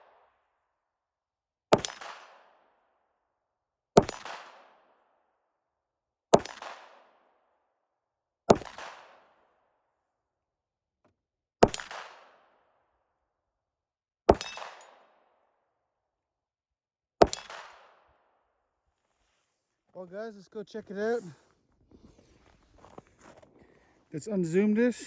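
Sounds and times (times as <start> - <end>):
pistol shots echoing: 11.6 - 12.4, 14.3 - 15.3, 17.2 - 18.1.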